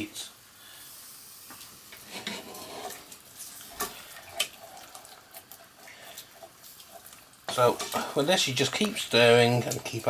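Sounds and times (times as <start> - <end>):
utensil scraping in sauce: 1.9 - 8.2.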